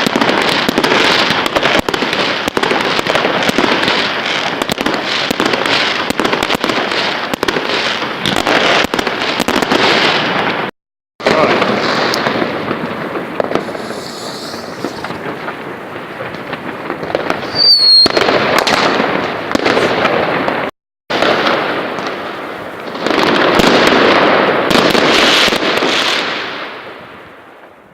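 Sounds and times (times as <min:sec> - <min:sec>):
fireworks bangs and crackling: 0:00.0 - 0:27.9
firework whistle: 0:13.3 - 0:15.6, 0:17.1 - 0:19.0.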